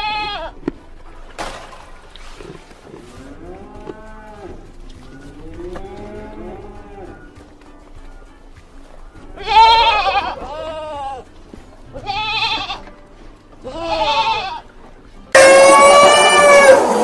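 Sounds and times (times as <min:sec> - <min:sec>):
cattle mooing: 0:03.0 - 0:07.3, 0:15.4 - 0:17.0.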